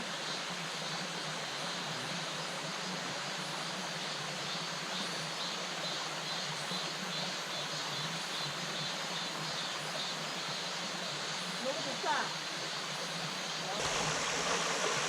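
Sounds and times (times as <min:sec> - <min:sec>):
stream rushing over rocks: 0:13.7 - 0:15.0.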